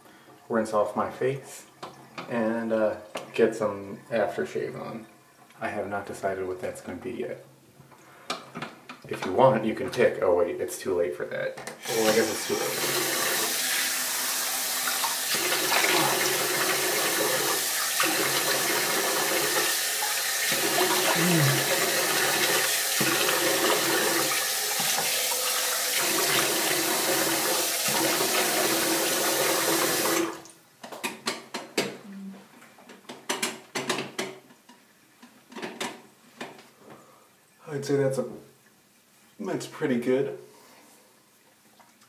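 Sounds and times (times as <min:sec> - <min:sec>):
tap running with splashing: 0:20.5 - 0:25.5.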